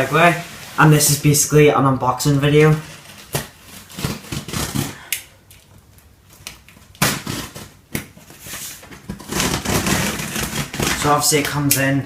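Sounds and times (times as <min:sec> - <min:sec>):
cardboard rustling scrape: 0:00.0 - 0:01.4, 0:07.3 - 0:11.5.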